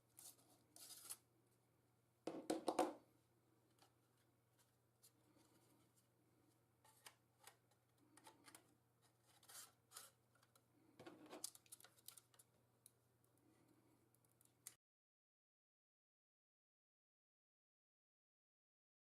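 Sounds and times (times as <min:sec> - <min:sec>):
light scrapes of small parts: 0:00.0 - 0:01.3, 0:06.8 - 0:12.5.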